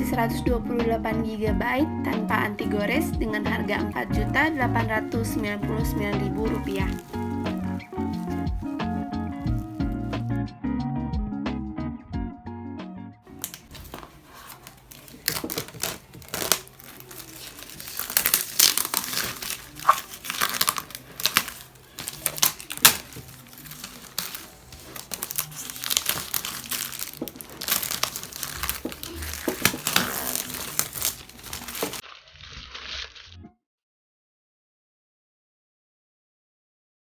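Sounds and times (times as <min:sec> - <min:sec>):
packaging crinkling: 0:02.8 - 0:10.3, 0:13.3 - 0:33.4.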